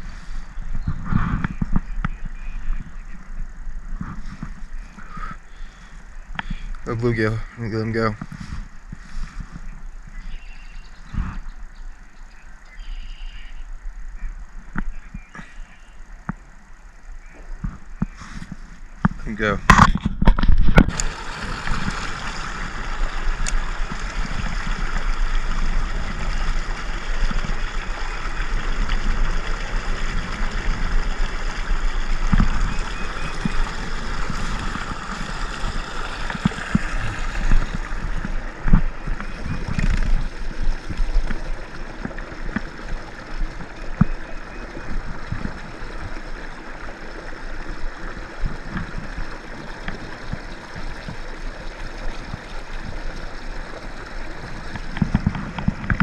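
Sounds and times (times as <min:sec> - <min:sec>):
wind buffeting microphone: 0:00.0 - 0:05.3, 0:17.6 - 0:46.8
steady rushing noise: 0:17.8 - 0:56.0.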